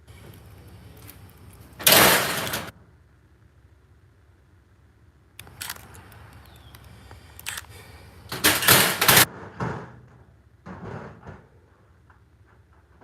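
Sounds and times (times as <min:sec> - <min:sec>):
metal clatter: 0:01.8 - 0:02.7, 0:08.3 - 0:11.5.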